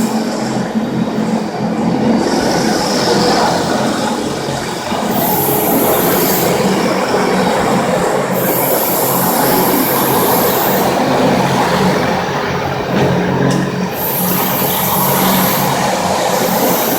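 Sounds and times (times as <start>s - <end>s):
concrete floor grinder grinding: 2.1s - 16.9s
high hiss: 2.2s - 12.3s, 13.9s - 16.9s.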